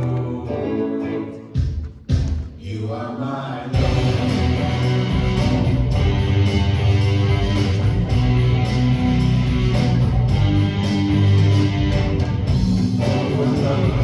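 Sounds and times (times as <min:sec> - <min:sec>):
bass: 0:00.0 - 0:01.0, 0:03.8 - 0:14.0
band playing: 0:03.8 - 0:14.0
strummed guitar: 0:03.8 - 0:14.0.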